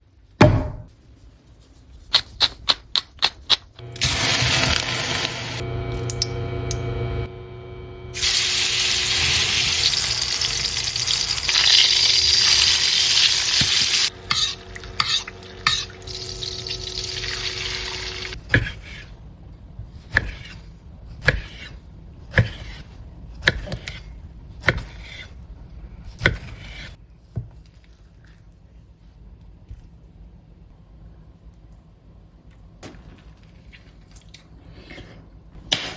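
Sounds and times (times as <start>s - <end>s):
steak sizzling in a hot pan: 8.2s - 14.1s.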